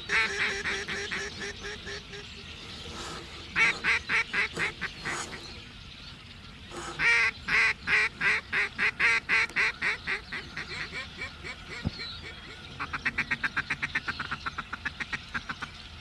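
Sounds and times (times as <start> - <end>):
duck quacking: 0.1 - 2.4, 3.0 - 5.5.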